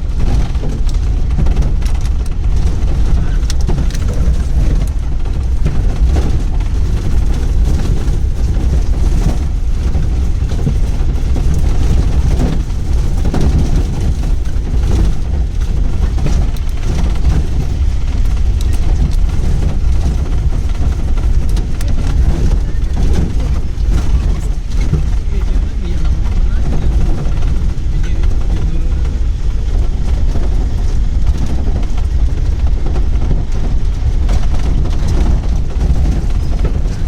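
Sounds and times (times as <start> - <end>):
vehicle engine and road rumble: 0.0 - 37.0.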